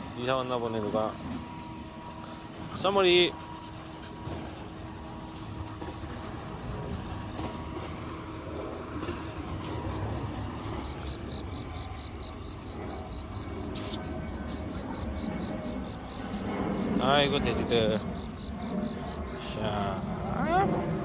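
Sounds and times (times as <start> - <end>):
insects trilling: 0.0 - 21.0
pulsed insect chirp: 0.0 - 21.0.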